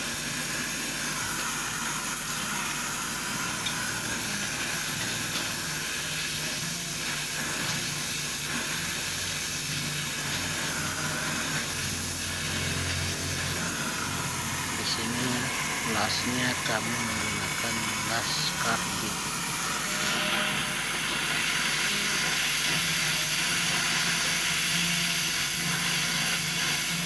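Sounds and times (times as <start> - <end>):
welding torch flame hissing: 0.0 - 27.0.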